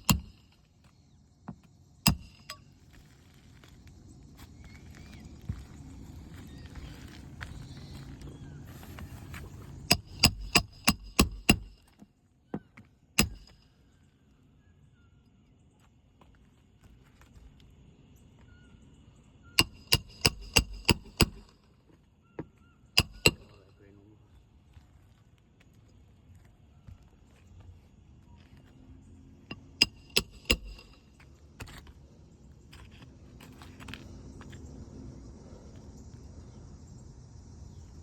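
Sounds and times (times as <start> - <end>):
hammer driving nails into shingles: 0.0 - 0.6, 1.5 - 2.6, 9.9 - 12.1, 13.2 - 13.6, 19.6 - 21.6, 23.0 - 23.6, 29.5 - 31.1.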